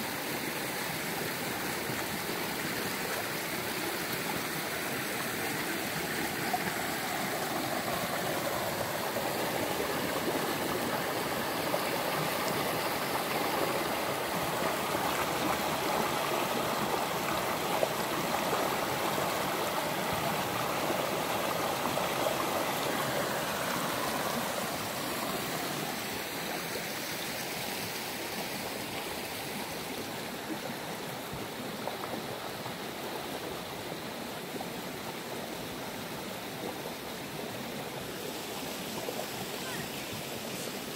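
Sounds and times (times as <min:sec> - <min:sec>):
stream water babbling: 0:00.0 - 0:40.9.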